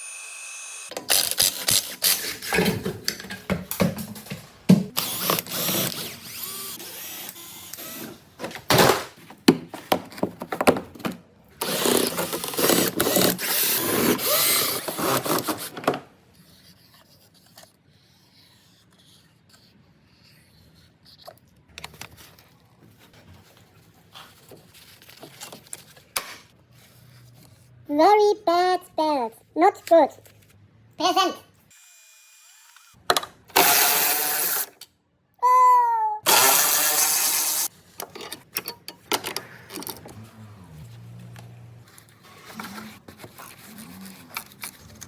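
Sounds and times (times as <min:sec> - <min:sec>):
power tool running: 0:00.0 - 0:01.3, 0:05.0 - 0:08.2, 0:33.6 - 0:34.7, 0:36.3 - 0:37.7
tool handling clicks and knocks: 0:38.0 - 0:40.1.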